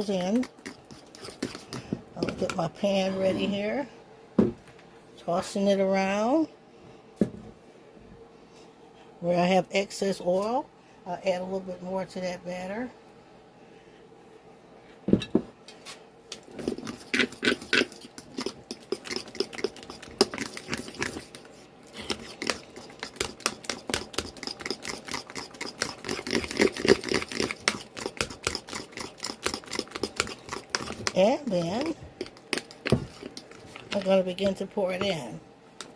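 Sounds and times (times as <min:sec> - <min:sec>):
fork whisking batter in bowl: 0:00.0 - 0:03.8, 0:16.4 - 0:35.9.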